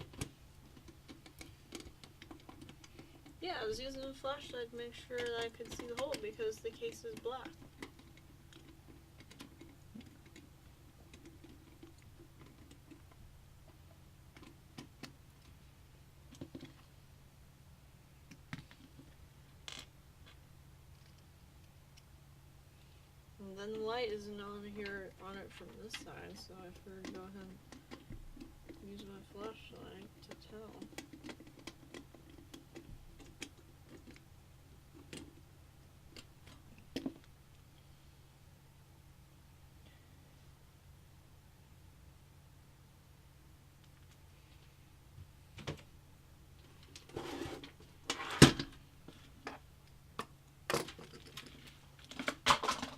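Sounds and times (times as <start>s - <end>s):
small parts clicking and tapping: 0.0s - 15.6s, 16.2s - 16.9s, 18.2s - 22.1s, 23.7s - 37.6s, 49.1s - 52.9s
low steady hum: 0.0s - 52.9s.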